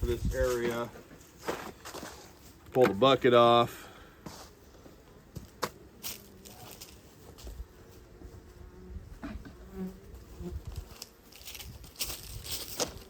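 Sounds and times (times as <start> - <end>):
bees buzzing: 0.0 - 13.0.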